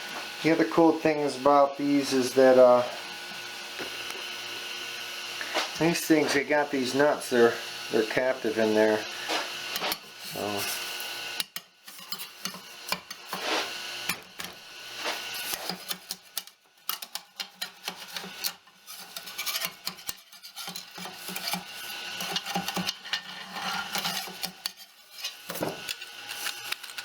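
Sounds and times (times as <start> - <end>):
plastic parts clicking and rubbing: 22.2 - 27.0.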